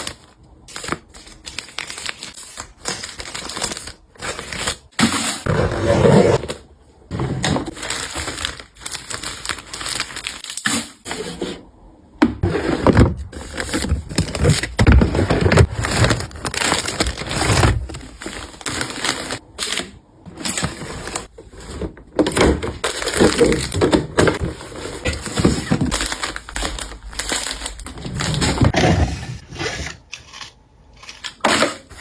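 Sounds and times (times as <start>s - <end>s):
packaging crinkling: 0.0s - 4.9s, 7.7s - 10.6s, 13.3s - 28.7s.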